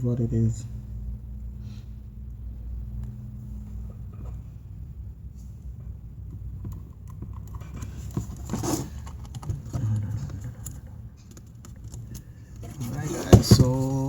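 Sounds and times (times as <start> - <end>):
low steady hum: 0.0 - 14.0
scraping rustle: 12.5 - 14.0.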